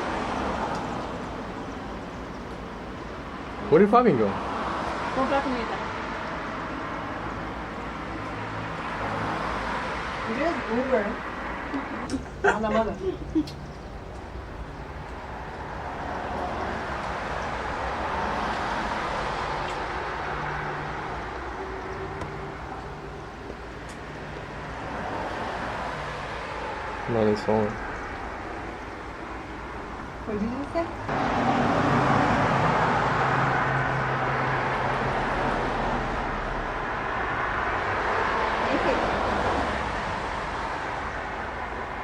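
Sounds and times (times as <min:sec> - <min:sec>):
vehicle road noise: 0:00.0 - 0:42.0.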